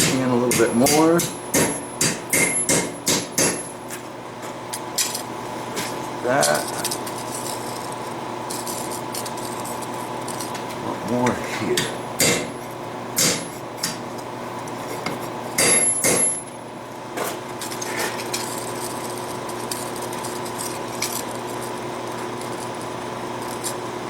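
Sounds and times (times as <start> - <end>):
hammer striking steel on anvil: 0.0 - 3.8, 11.8 - 12.6, 13.2 - 14.0, 15.6 - 16.5
steady background hum: 0.0 - 24.0.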